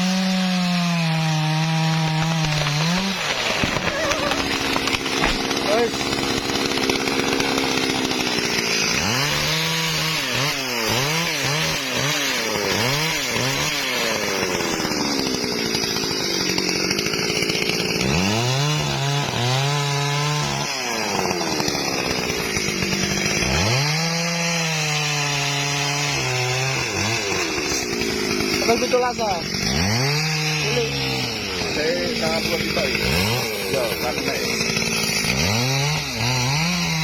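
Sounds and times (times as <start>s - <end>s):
chainsaw engine revving: 0.0s - 37.0s.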